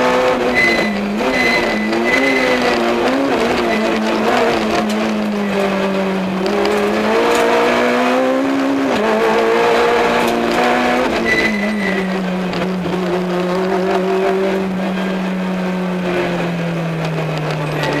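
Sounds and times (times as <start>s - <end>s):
car engine revving from inside: 0.0s - 11.2s.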